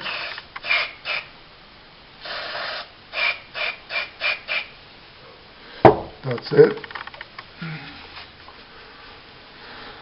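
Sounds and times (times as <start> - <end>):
aerosol spray can hissing: 0.0 - 1.3, 2.2 - 4.7.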